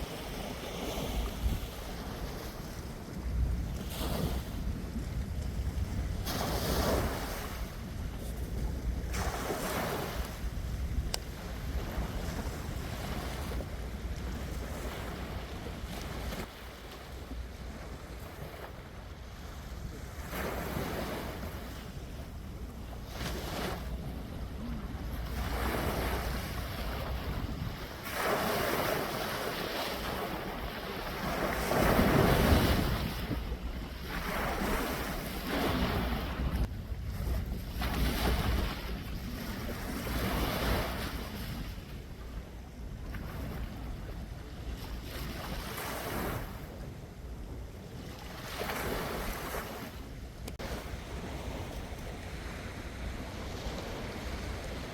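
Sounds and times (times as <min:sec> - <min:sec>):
sea waves washing in: 0:00.0 - 0:46.8, 0:47.9 - 0:54.9
wind buffeting microphone: 0:00.0 - 0:54.9.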